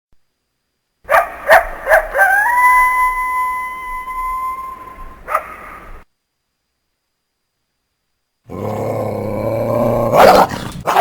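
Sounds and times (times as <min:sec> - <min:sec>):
coyote yipping and howling: 0:01.1 - 0:06.0.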